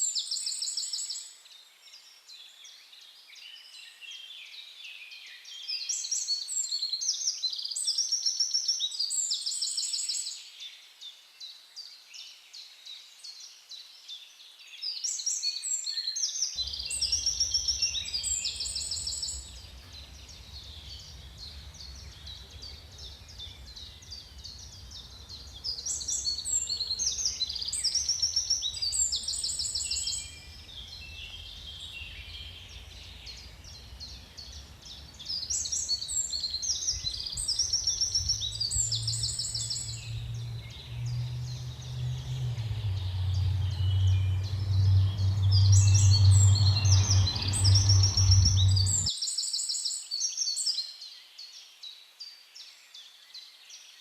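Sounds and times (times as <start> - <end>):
songbird trilling song: 0.0 - 11.1, 11.8 - 51.6
soft background chirping: 16.5 - 54.0
low steady rumble: 16.8 - 27.4, 28.6 - 35.5, 37.1 - 49.1.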